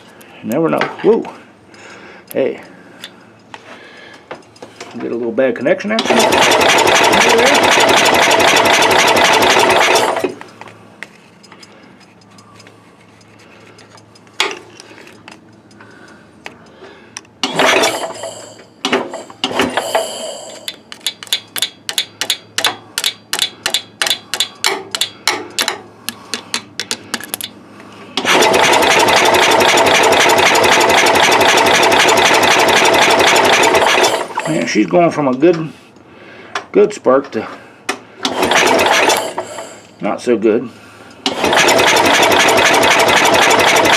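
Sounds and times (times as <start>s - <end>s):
engine cranking by starter: 5.9s - 10.5s, 17.4s - 20.8s, 28.2s - 34.8s, 38.2s - 40.0s, 41.2s - 43.9s
clicks and short bursts: 6.0s - 10.6s, 17.4s - 22.4s, 28.2s - 34.6s, 38.2s - 39.9s, 41.2s - 43.9s.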